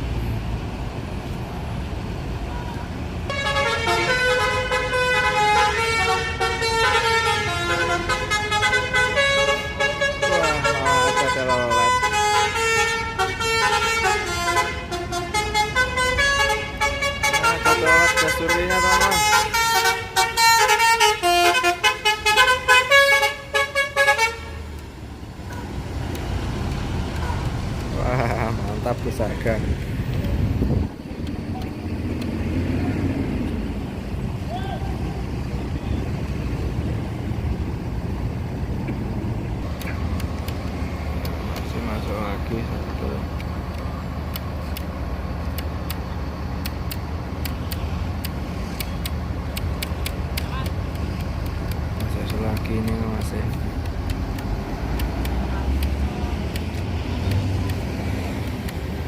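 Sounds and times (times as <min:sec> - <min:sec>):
bus engine running low: 0:00.0 - 0:59.0
bus horn playing a tune: 0:03.3 - 0:24.7
sharp high ticks: 0:24.7 - 0:28.0, 0:43.4 - 0:59.0.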